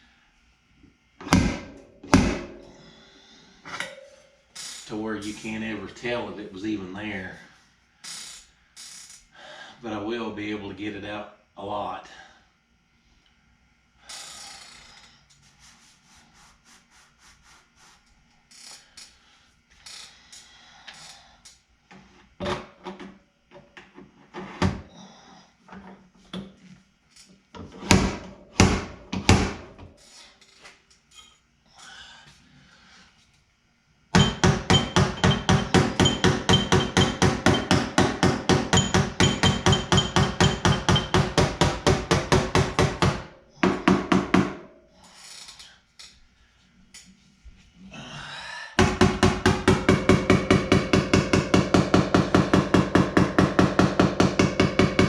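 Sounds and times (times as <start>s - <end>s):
hammer tapping sheet metal: 1.2s - 2.9s, 27.8s - 29.7s, 34.2s - 44.7s, 48.8s - 55.0s.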